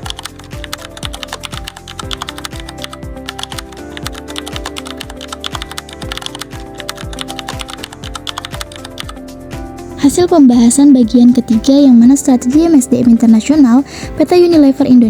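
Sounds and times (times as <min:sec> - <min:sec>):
rapid keyboard typing: 0:00.0 - 0:09.3
music with thumping beat: 0:00.0 - 0:15.0.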